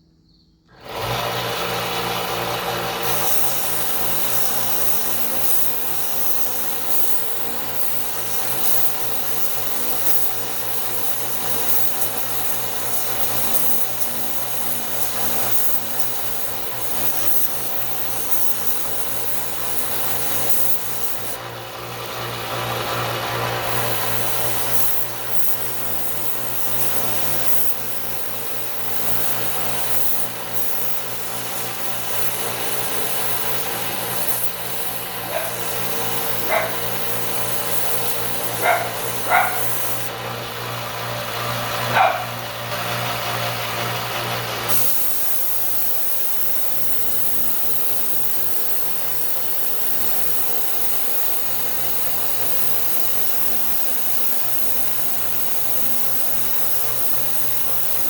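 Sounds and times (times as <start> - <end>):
belt sander running: 0.7 - 58.0
dog barking: 35.3 - 35.6, 36.4 - 37.0, 38.6 - 39.8, 41.9 - 42.4.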